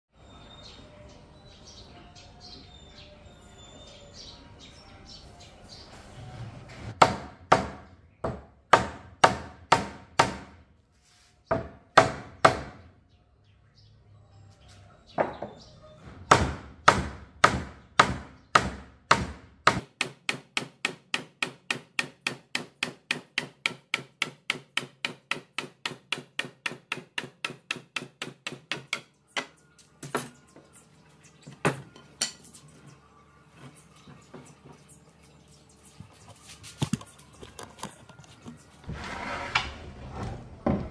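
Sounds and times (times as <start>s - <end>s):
faint birds chirping: 0.1s - 8.7s, 10.9s - 16.5s
hammering on wood: 7.0s - 10.6s, 11.5s - 12.9s, 16.3s - 29.6s.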